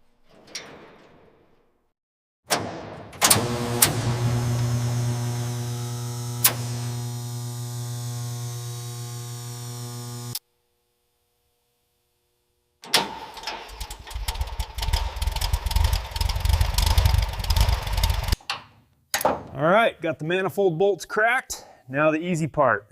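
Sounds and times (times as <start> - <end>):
wrench clanking and knocking: 0.3 - 1.4, 18.2 - 19.6
steady hum: 3.3 - 10.4.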